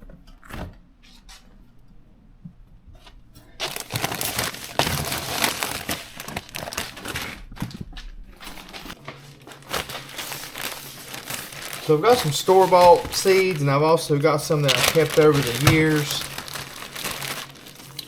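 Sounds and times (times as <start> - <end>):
bag crinkling: 3.6 - 18.0.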